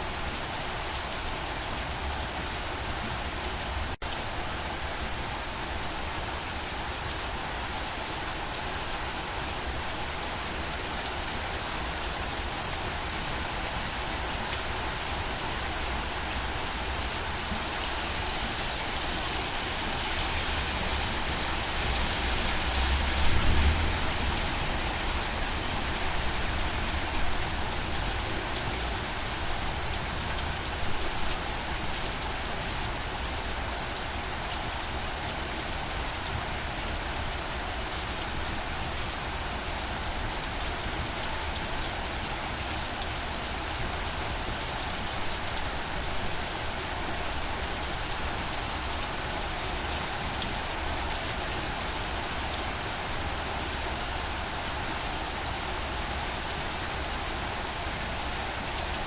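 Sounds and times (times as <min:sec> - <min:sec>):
rain pattering: 0:00.4 - 0:59.0.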